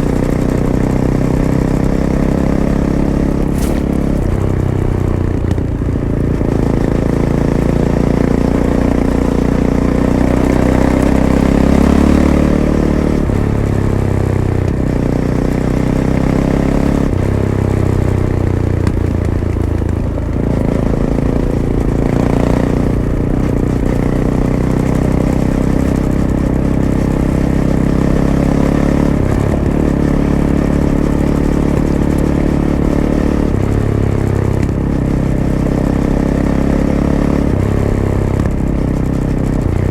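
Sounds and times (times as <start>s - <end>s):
motorcycle engine revving while riding: 0.0s - 39.9s.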